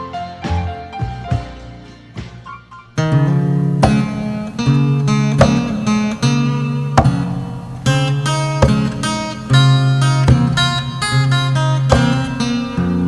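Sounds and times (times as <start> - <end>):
strummed guitar chords: 3.0 - 13.0.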